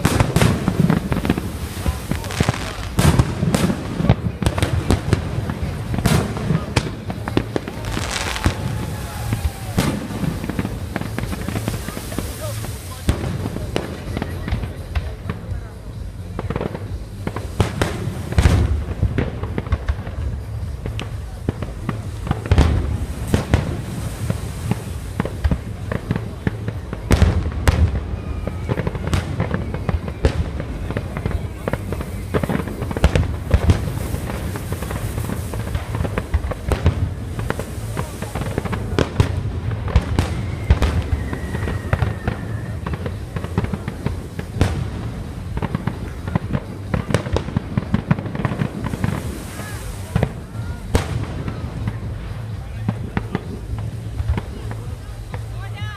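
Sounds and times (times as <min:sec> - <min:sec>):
low rumble: 0:00.0 - 0:55.7
fireworks bangs and crackles: 0:00.0 - 0:55.9
falling firework whistle: 0:07.6 - 0:13.0, 0:27.1 - 0:34.4, 0:39.9 - 0:43.6.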